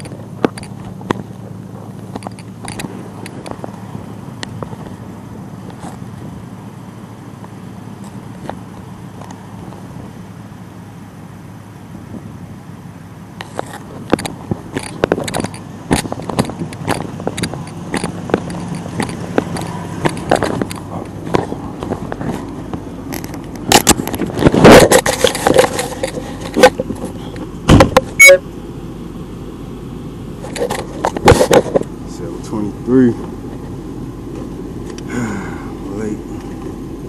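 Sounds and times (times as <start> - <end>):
low engine hum: 0.0 - 37.0
rattling clicks and knocks: 2.1 - 3.8, 13.4 - 28.3, 30.4 - 31.9
loud clatter: 13.4 - 28.3, 30.4 - 31.9.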